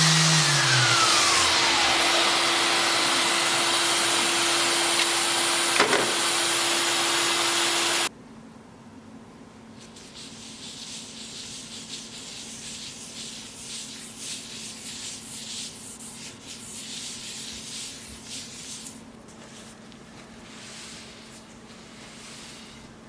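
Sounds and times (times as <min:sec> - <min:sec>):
hand sanding wood: 0:00.0 - 0:08.1, 0:10.0 - 0:19.8.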